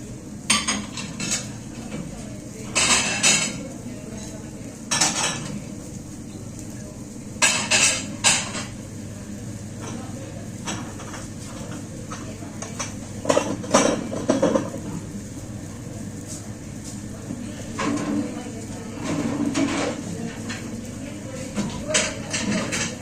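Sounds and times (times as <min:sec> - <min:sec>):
dishes clattering and clinking: 0:00.5 - 0:02.1, 0:02.7 - 0:03.6, 0:04.2 - 0:05.6, 0:07.4 - 0:08.8, 0:09.8 - 0:14.8, 0:17.7 - 0:18.4, 0:19.0 - 0:20.8, 0:21.5 - 0:23.0.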